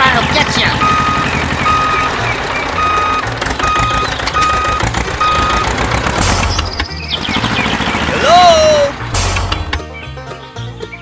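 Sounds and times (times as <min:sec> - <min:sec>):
low engine rumble: 0:00.0 - 0:11.0
reversing alarm beeping: 0:00.4 - 0:06.4.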